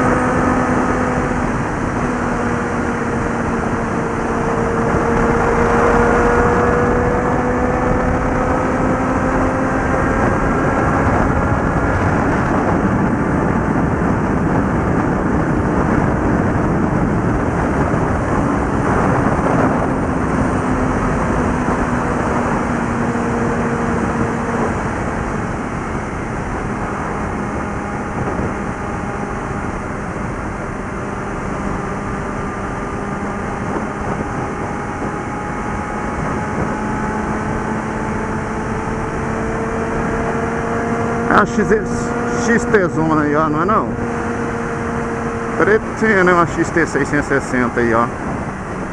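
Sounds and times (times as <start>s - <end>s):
motorcycle engine at speed: 0.0s - 48.9s
wind rushing over microphone: 0.0s - 48.9s.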